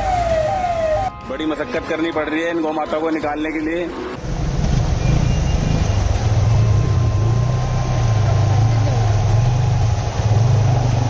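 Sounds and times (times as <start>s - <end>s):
constant rushing noise: 4.0s - 11.0s
engine running with low hum: 4.2s - 11.0s.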